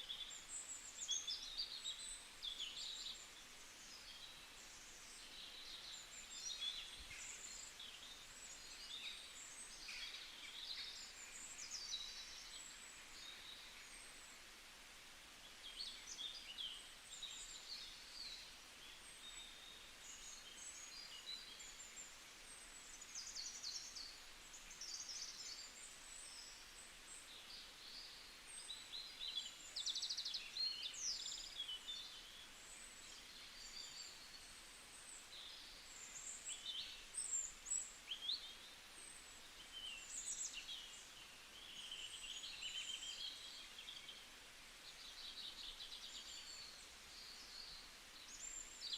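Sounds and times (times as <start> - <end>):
faint steady hiss: 0.0 - 48.9
small birds chirping and singing: 0.0 - 48.9.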